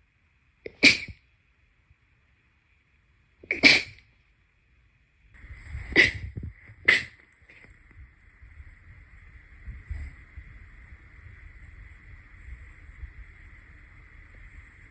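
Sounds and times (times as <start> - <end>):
sharp sneezes: 0.7 - 1.2, 3.4 - 4.0, 5.9 - 6.3, 6.9 - 7.2.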